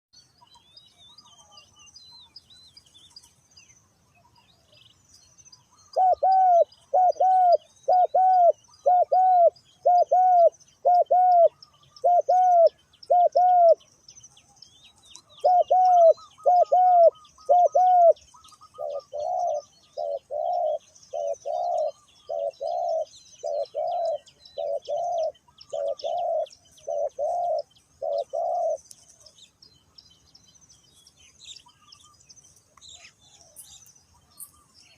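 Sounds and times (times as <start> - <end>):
small birds chirping: 0.2 - 34.9
dove cooing: 5.9 - 13.8, 15.3 - 29.3.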